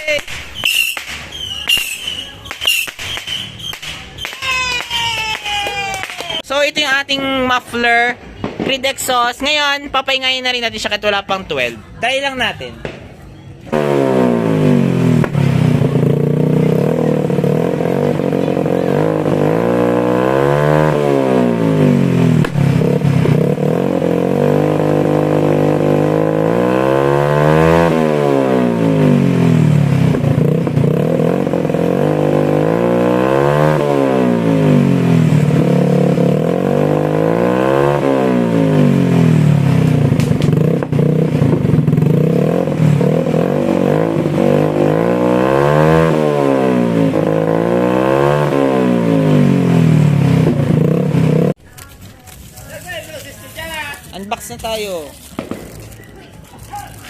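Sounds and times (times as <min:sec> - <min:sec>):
motorcycle engine revving: 0:13.6 - 0:51.6.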